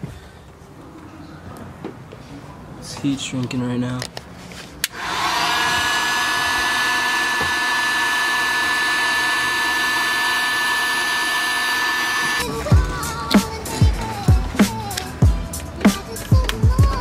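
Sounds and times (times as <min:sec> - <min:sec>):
heat gun blowing with high whine: 0:04.9 - 0:12.5.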